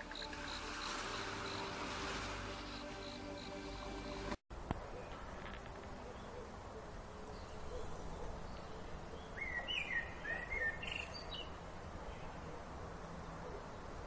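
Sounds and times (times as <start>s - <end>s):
outdoor background noise: 0.0s - 14.0s.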